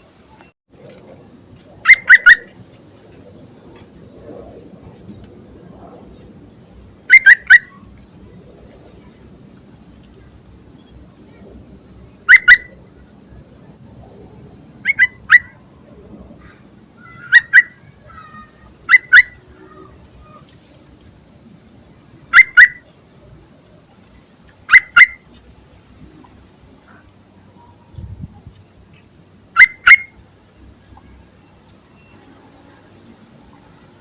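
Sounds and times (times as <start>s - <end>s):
bird calling sharp double notes: 17.0s - 20.4s.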